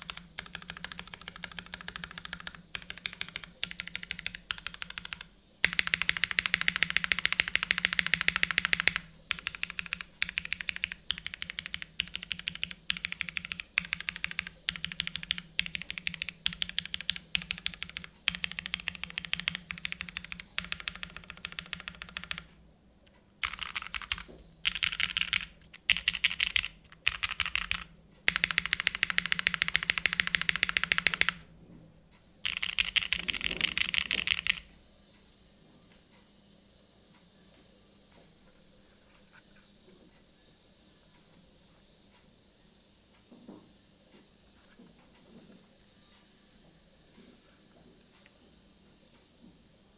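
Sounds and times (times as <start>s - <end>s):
mechanical keyboard typing: 0.0s - 22.6s, 23.4s - 31.5s, 32.4s - 34.7s.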